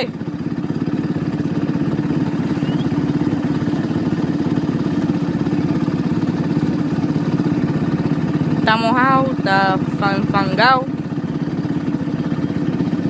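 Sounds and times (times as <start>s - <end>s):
atv engine idling: 0.0s - 13.0s.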